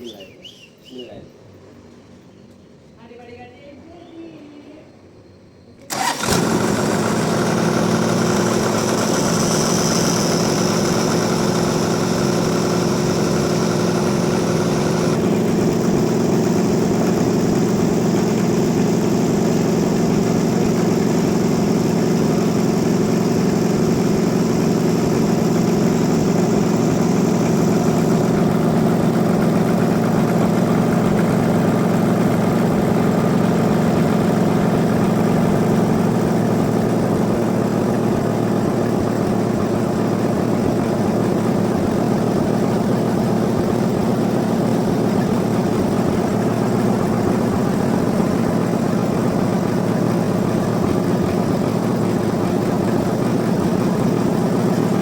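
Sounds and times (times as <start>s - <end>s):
sawmill engine droning: 5.9s - 55.0s.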